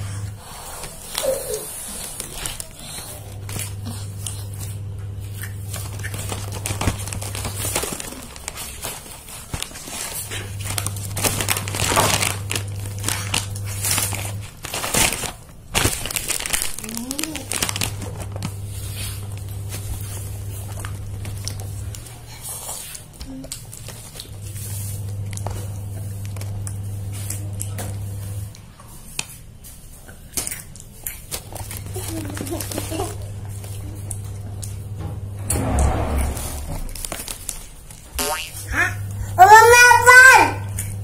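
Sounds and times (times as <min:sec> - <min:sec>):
plastic packets crinkling: 0:00.8 - 0:34.9, 0:36.3 - 0:41.0
low hum: 0:31.7 - 0:37.7.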